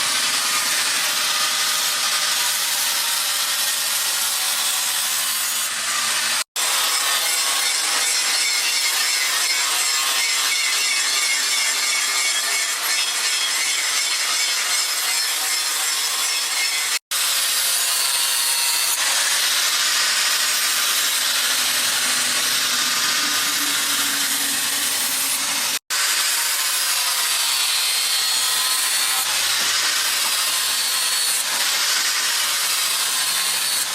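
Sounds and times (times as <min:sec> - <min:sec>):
abrasive scraping: 0:21.2 - 0:25.8.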